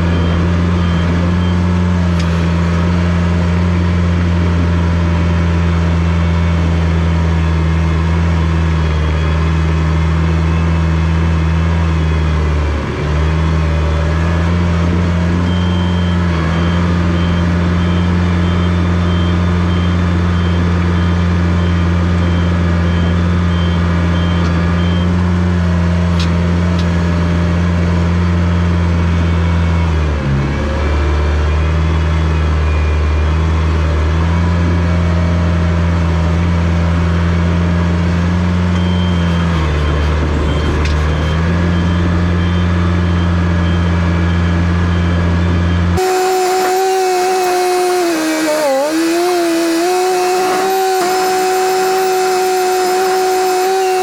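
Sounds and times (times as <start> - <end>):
reversing alarm beeping: 0.0 - 4.0, 6.0 - 25.6, 31.3 - 34.3, 38.3 - 54.0
bulldozer diesel engine running: 0.0 - 54.0.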